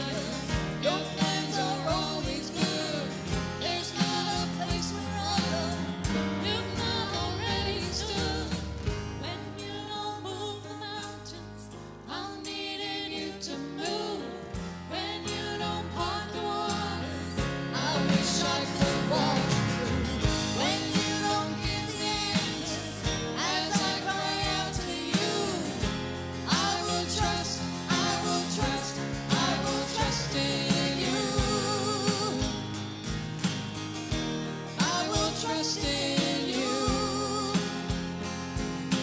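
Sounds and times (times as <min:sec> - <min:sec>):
person singing worship song: 0:00.0 - 0:08.7, 0:12.1 - 0:32.6, 0:34.8 - 0:37.9
instrumental accompaniment: 0:13.8 - 0:39.0.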